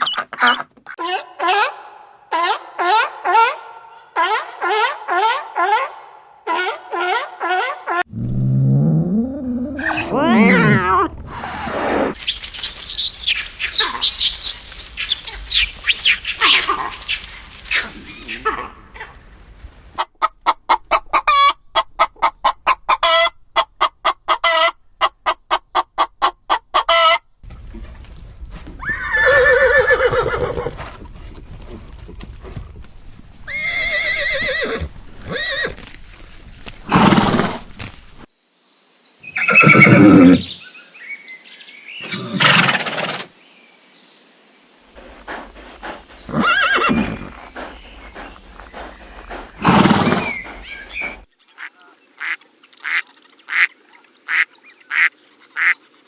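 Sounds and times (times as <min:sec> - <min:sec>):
farm animal calls: 0:12.8 - 0:19.2, 0:45.0 - 0:53.7
horse whinnies: 0:28.8 - 0:31.1, 0:33.5 - 0:35.8, 0:36.9 - 0:37.7, 0:39.4 - 0:40.5, 0:45.3 - 0:51.2.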